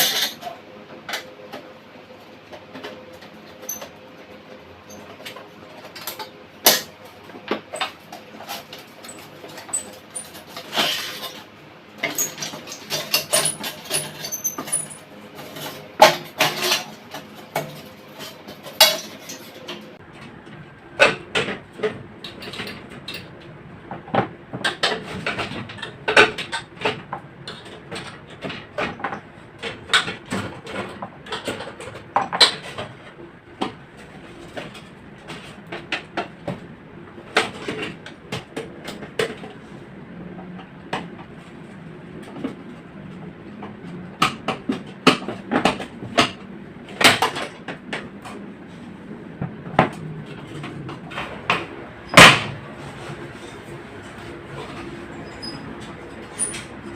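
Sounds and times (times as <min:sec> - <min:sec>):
metal parts clinking: 0:00.0 - 0:00.4, 0:12.0 - 0:17.0.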